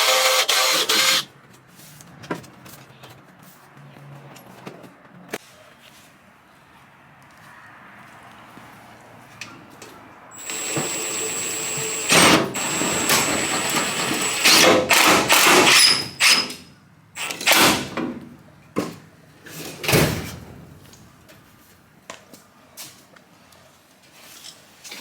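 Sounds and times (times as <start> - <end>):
power drill whining on metal: 0.0 - 1.2, 10.3 - 16.6, 17.2 - 17.8.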